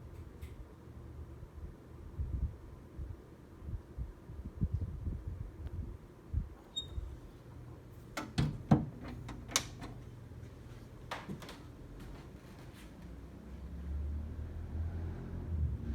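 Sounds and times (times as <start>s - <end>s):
sharp clicks and knocks: 8.2s - 10.1s.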